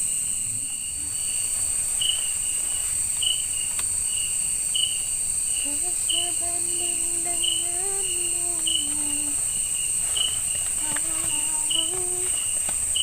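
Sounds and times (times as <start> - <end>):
insect chirp: 0.0 - 13.0
insects droning: 0.0 - 13.0.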